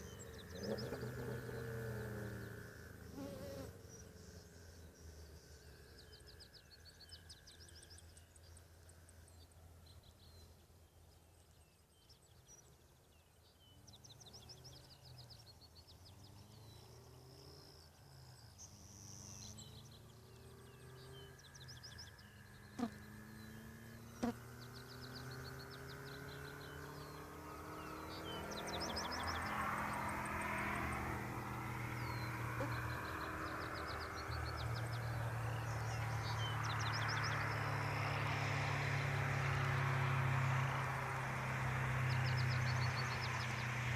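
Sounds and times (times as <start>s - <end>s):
distant car engine: 0.0s - 7.1s, 14.0s - 43.9s.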